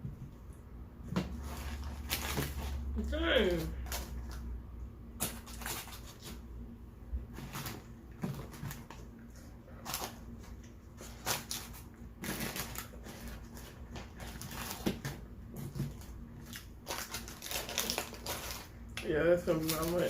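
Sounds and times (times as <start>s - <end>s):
food packaging clicks and rustles: 1.2s - 4.5s, 5.2s - 6.4s, 7.3s - 20.0s.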